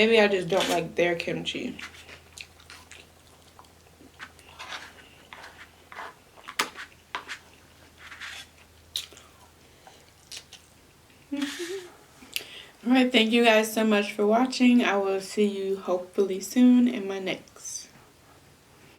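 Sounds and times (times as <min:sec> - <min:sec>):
person chewing food: 0:01.8 - 0:11.2.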